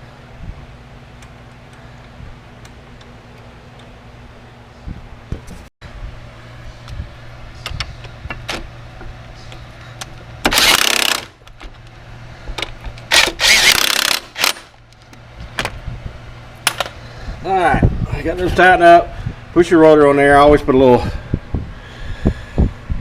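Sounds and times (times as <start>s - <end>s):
impact wrench hammering: 10.4s - 11.4s, 13.1s - 14.6s
tools clicking and knocking: 12.6s - 15.7s.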